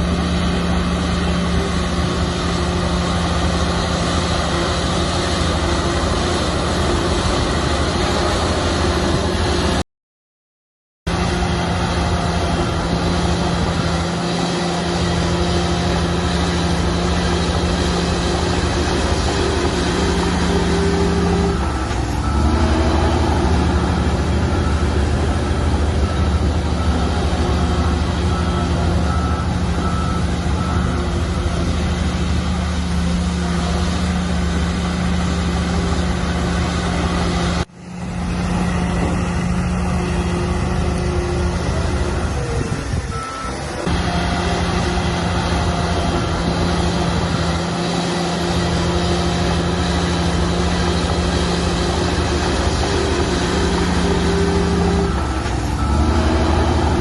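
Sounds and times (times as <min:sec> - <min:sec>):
bulldozer diesel engine running: 0:00.0 - 0:09.8, 0:11.1 - 0:57.0
reversing alarm beeping: 0:13.3 - 0:32.2, 0:39.7 - 0:57.0.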